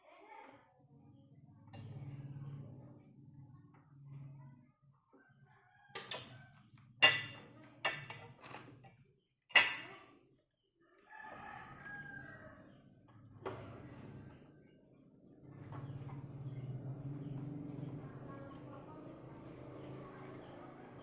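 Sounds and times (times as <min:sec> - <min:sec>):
rooster crowing: 0:11.1 - 0:12.6.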